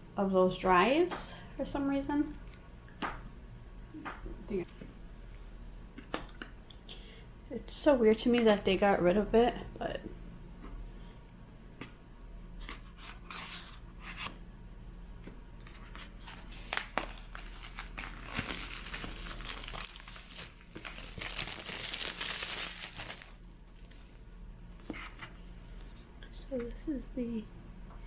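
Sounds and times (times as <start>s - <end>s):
packaging crinkling and tearing: 15.7s - 23.4s.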